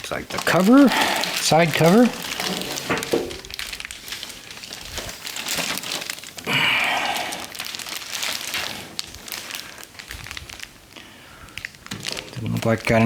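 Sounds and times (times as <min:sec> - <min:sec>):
plastic packaging crinkling: 0:00.0 - 0:13.0.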